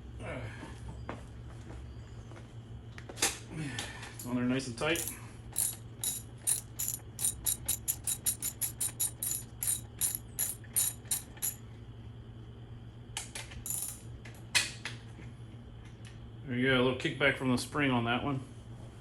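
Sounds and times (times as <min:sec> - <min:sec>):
fork cap knocking free: 0:05.0 - 0:11.6
socket ratchet clicking: 0:05.0 - 0:11.6, 0:13.7 - 0:14.0.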